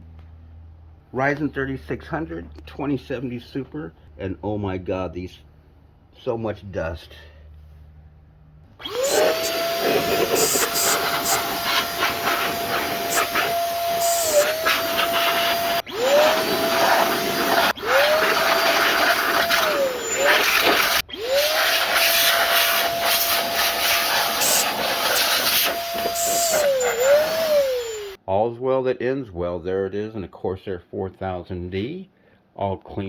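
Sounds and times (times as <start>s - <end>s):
electric blower motor whine: 8.8s - 28.2s.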